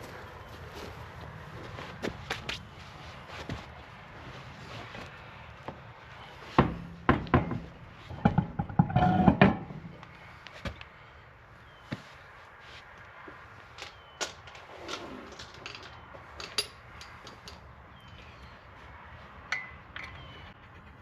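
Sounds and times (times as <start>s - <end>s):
metal clanks of lug nuts: 6.6s - 10.0s.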